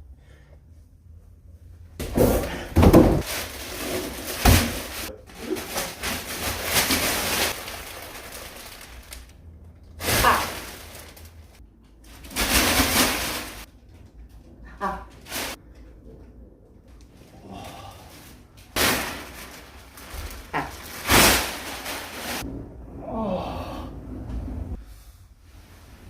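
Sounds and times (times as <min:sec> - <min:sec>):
packaging rustling and scraping: 0:03.2 - 0:09.3, 0:18.8 - 0:22.4.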